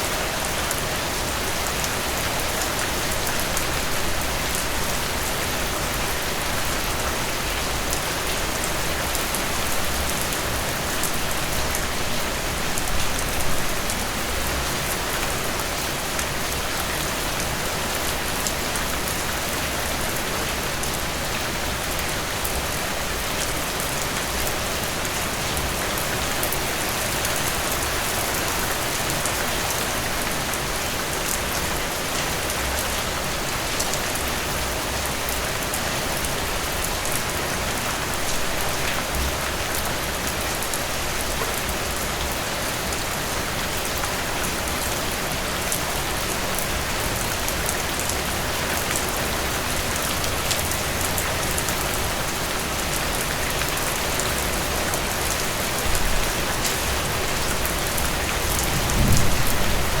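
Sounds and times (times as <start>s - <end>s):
heavy rain falling: 0.0s - 60.0s.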